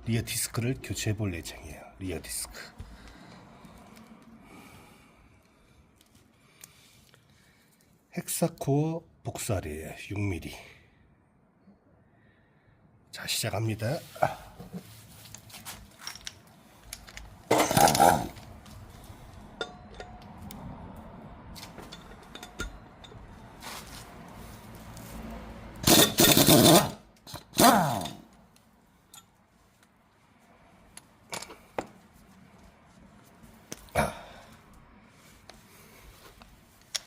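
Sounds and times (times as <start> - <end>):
metal clinks of tool and bolts: 16.0 - 18.5, 19.6 - 20.6, 21.6 - 23.6, 29.1 - 29.4, 31.3 - 31.9
power tool bursts: 25.8 - 28.2.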